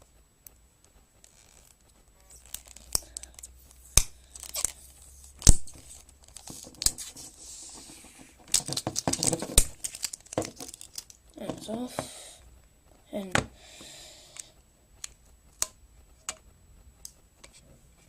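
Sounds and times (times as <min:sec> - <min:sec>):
plastic wrap crinkling and tearing: 0:01.3 - 0:07.3, 0:08.5 - 0:11.2
sharp plastic snaps: 0:02.4 - 0:07.0, 0:14.3 - 0:17.6.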